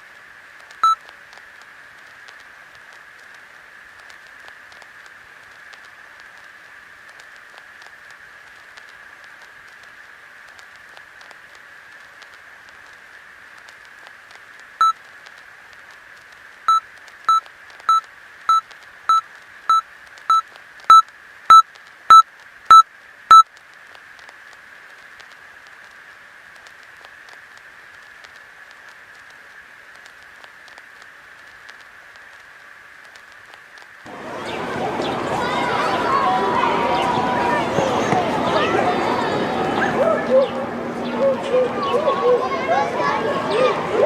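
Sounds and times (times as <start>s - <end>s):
steady hiss: 0.0s - 35.5s
short test tone beeps: 20.3s - 23.4s.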